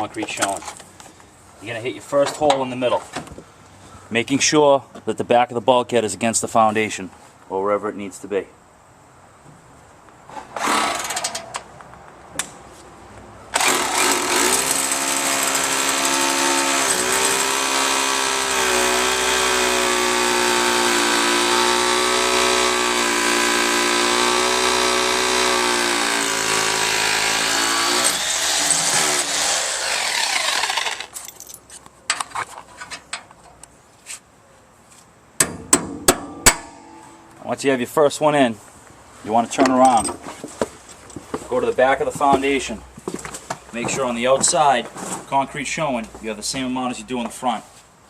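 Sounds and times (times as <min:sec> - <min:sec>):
power drill boring into concrete: 0:10.6 - 0:11.4, 0:13.6 - 0:31.2.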